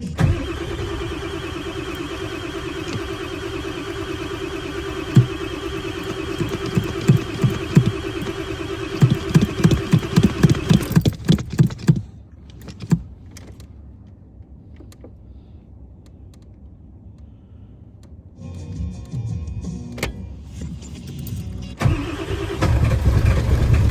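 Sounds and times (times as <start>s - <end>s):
diesel engine cranking: 0.0s - 13.6s, 21.8s - 23.9s.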